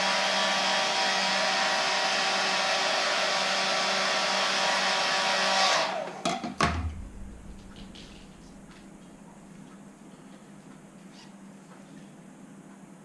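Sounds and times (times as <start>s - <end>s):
heat gun blowing: 0.0s - 6.3s
fan winding down: 0.0s - 9.7s
faint low hum: 6.6s - 13.0s.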